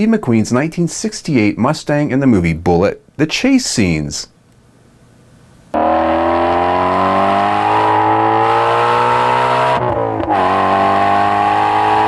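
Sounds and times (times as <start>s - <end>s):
car engine accelerating hard: 5.8s - 12.0s.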